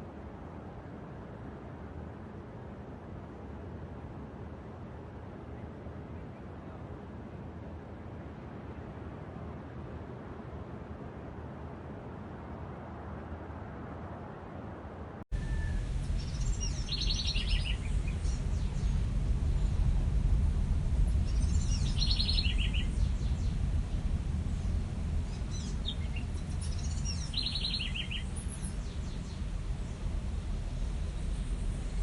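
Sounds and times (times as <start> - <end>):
low background rumble: 0.0 - 32.0
songbird singing: 15.3 - 20.2, 21.0 - 32.0.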